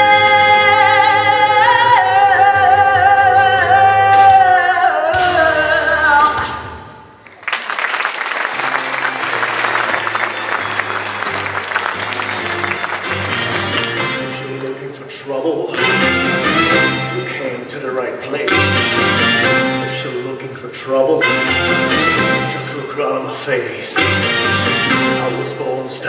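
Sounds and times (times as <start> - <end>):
person singing with music: 0.0 - 7.2, 13.7 - 26.0
audience applause: 7.2 - 14.7.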